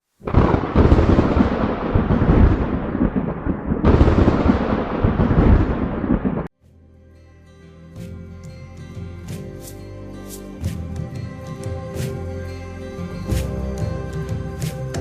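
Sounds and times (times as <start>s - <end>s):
thunder claps and rumble: 0.2s - 6.5s.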